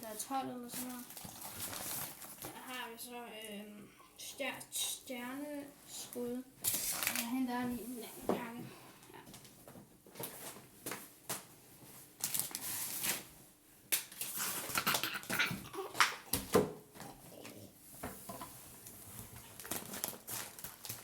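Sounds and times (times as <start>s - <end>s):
packaging rustling: 0.8s - 2.6s, 6.7s - 7.3s, 12.2s - 13.3s, 18.9s - 21.0s.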